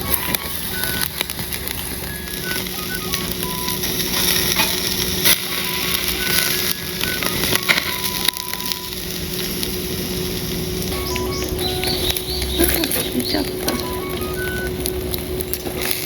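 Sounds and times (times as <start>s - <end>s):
charcoal fire crackling: 0.0s - 16.0s
food sizzling on grill: 0.0s - 16.0s
soft melody: 0.0s - 16.0s.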